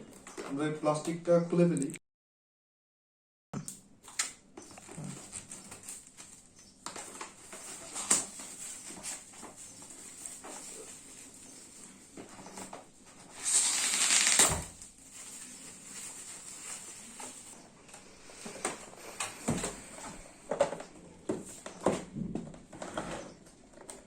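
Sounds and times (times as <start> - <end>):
plastic crinkles: 4.6 - 17.6
plastic wrapping tearing: 13.3 - 17.6.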